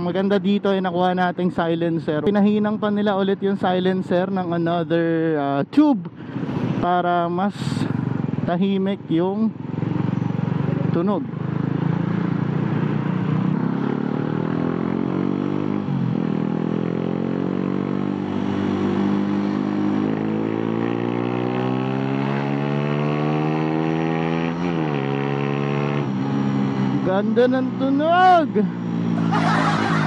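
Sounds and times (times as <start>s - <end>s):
motorcycle engine accelerating: 9.2s - 30.0s.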